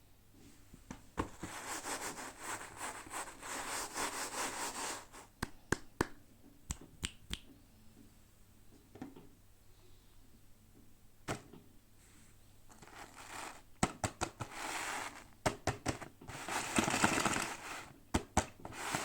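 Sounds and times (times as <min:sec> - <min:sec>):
packaging rubbing and scraping: 0:12.7 - 0:19.0.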